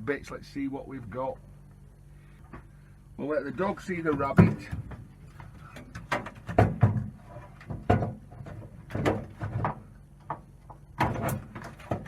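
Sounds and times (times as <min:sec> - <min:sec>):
clunks of metal casing: 0:04.0 - 0:12.0.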